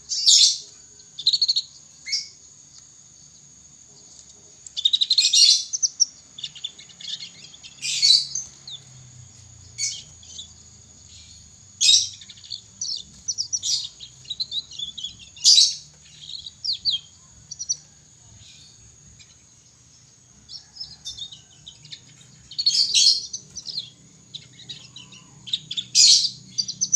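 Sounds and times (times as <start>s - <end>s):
canary twittering: 4.8s - 18.0s, 20.5s - 26.9s.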